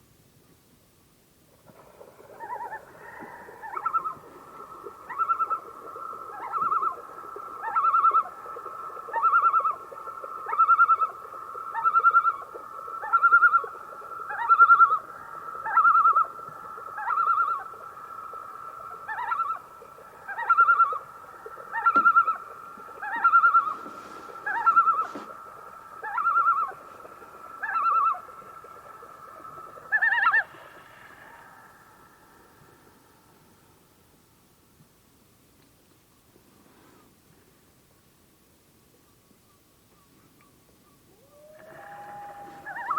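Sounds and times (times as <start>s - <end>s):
loon calling: 2.3s - 17.8s, 18.7s - 30.7s, 41.0s - 42.9s.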